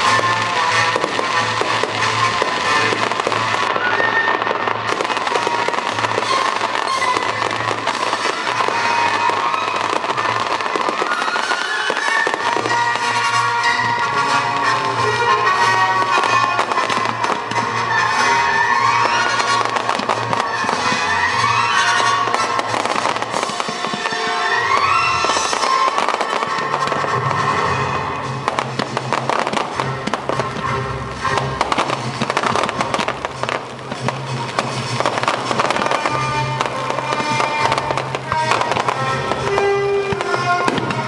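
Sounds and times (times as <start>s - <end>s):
fireworks bursting and crackling: 0.0s - 41.0s
loud music: 0.0s - 41.0s
rising firework whistles: 0.0s - 41.0s.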